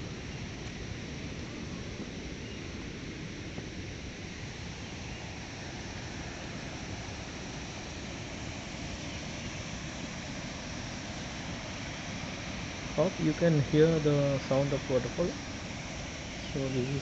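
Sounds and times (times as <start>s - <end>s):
waterfall rushing: 4.4s - 17.0s.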